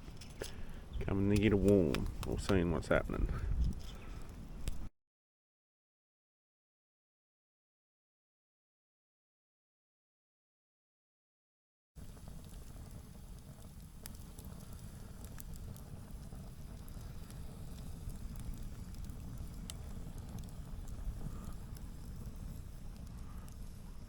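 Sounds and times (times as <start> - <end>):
campfire rumble: 0.0 - 4.9, 12.0 - 24.0
fire crackles and pops: 0.0 - 4.9, 12.0 - 24.0.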